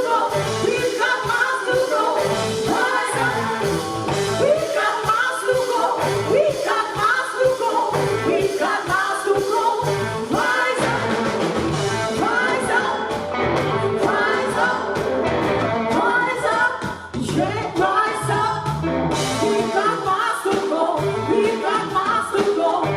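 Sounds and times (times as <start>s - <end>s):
bass: 0.0s - 22.9s
drums: 0.0s - 22.9s
lead electric guitar bends: 2.2s - 4.6s, 9.8s - 16.4s, 18.2s - 19.9s.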